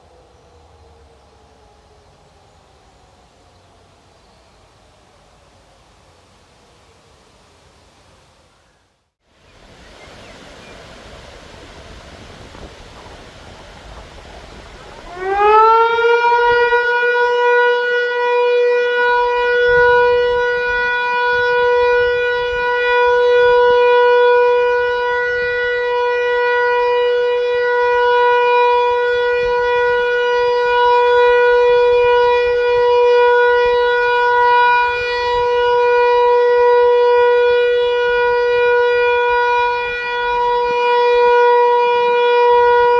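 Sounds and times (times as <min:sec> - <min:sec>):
wind noise: 0:09.4 - 0:42.9
motor siren steady tone: 0:12.1 - 0:42.9.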